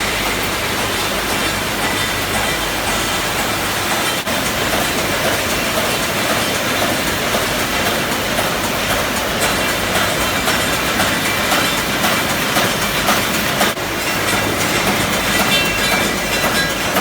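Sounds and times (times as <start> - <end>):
dense mechanical clatter: 0.0 - 17.0.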